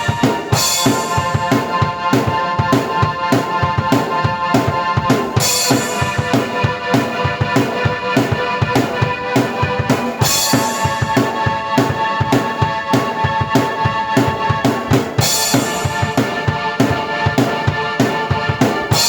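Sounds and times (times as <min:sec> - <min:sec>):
keyboard chords: 0:00.0 - 0:19.0
kick and snare drum beat: 0:00.0 - 0:19.0.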